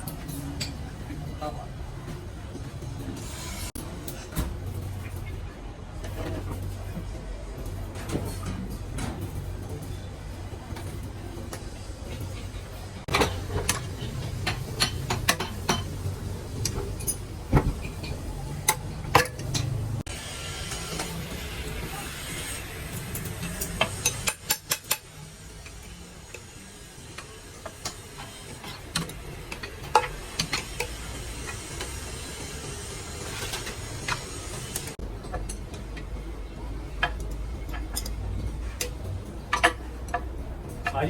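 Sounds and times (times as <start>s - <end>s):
hand tools clicking and knocking: 23.0s - 26.4s, 27.2s - 41.0s.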